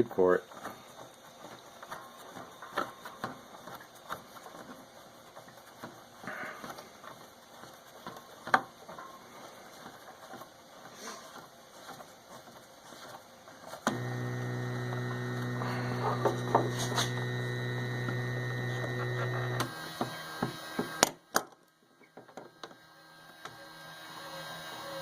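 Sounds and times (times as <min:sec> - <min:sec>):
electrical hum: 0:08.8 - 0:25.0.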